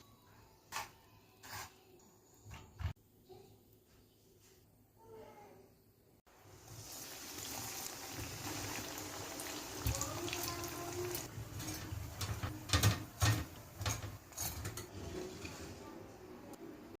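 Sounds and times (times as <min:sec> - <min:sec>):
food sizzling in hot oil: 0:06.3 - 0:12.9.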